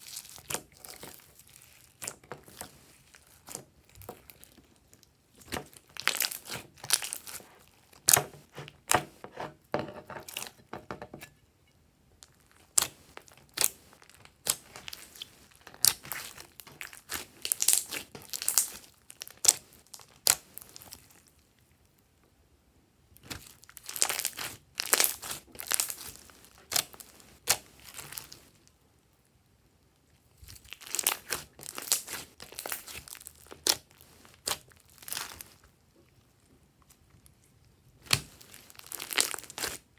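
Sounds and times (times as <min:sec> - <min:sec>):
slime squishing and popping: 0:05.4 - 0:09.0, 0:12.6 - 0:21.1, 0:23.2 - 0:28.4, 0:30.4 - 0:35.6, 0:38.0 - 0:39.9.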